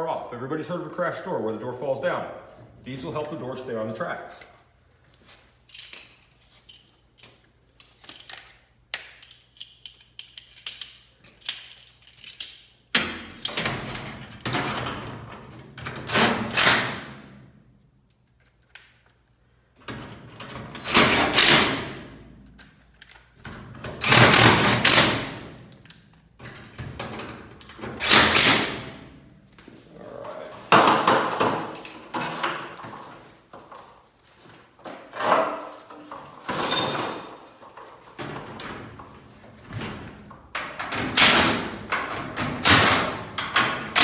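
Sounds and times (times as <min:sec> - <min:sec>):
door parts scraping: 0:19.9 - 0:21.9, 0:30.2 - 0:33.8
metal door hardware clicking: 0:22.6 - 0:28.9.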